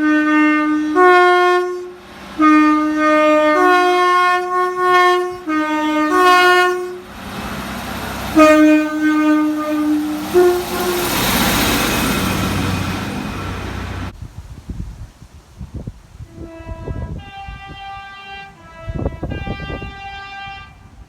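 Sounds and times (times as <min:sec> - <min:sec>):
two-tone train horn blasts: 0:00.0 - 0:07.6, 0:08.2 - 0:14.0, 0:16.2 - 0:21.0
train running noise: 0:00.0 - 0:14.2.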